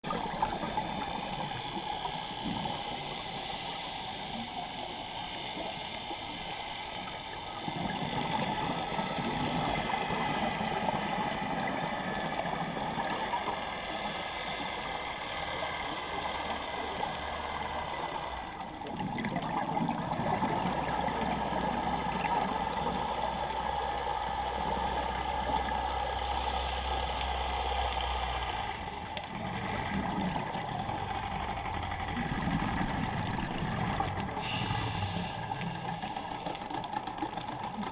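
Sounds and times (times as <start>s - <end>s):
steady engine hum: 0.0s - 18.8s, 20.1s - 37.9s
water gurgling and rushing: 7.6s - 23.4s, 24.3s - 37.9s.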